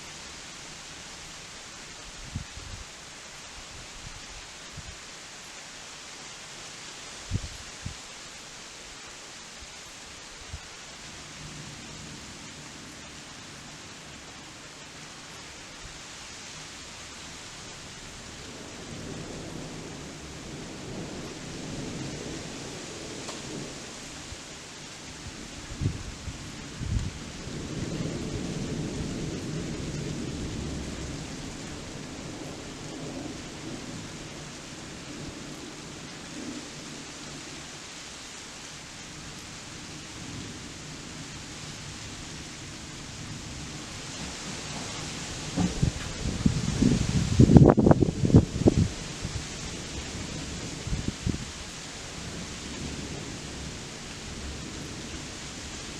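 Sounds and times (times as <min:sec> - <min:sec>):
steady rain falling: 0:00.0 - 0:55.9
low rumble of thunder: 0:18.0 - 0:24.4, 0:25.1 - 0:37.7, 0:39.2 - 0:55.9
distant thunder rumble: 0:43.4 - 0:55.9.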